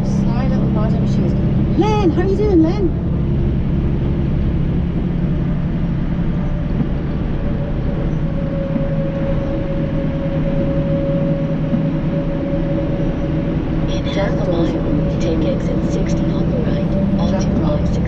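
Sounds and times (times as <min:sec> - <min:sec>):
engine and road hum in cab: 0:00.0 - 0:18.0
thin steady whine: 0:00.0 - 0:18.0.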